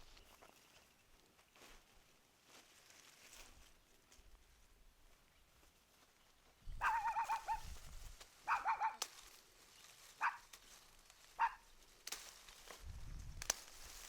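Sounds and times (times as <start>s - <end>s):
dog yelping: 6.8s - 7.7s, 8.5s - 9.0s, 10.2s - 10.4s, 11.4s - 11.6s.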